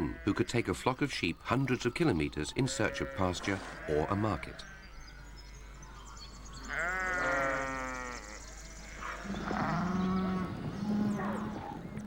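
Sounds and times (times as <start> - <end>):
sheep bleating: 2.7 - 4.8, 6.7 - 10.4.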